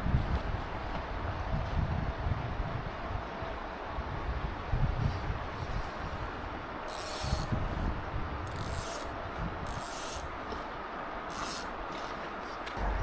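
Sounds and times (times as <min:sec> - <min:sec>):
fishing reel ratchet buzzing: 0:06.9 - 0:07.5, 0:08.5 - 0:10.3, 0:11.3 - 0:11.8.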